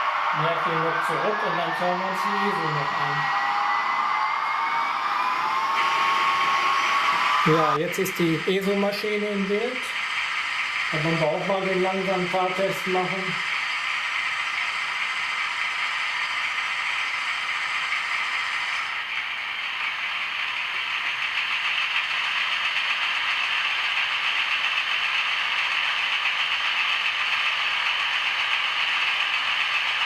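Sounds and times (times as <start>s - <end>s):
model locomotive whirring and rattling: 4.7s - 30.0s.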